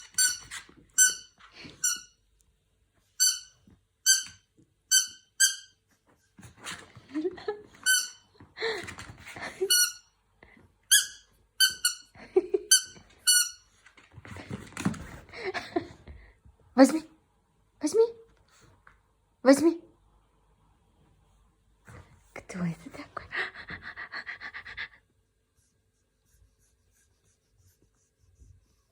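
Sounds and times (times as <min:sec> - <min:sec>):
rubber squeaky toy squeaking: 0:00.0 - 0:02.1, 0:03.2 - 0:05.8.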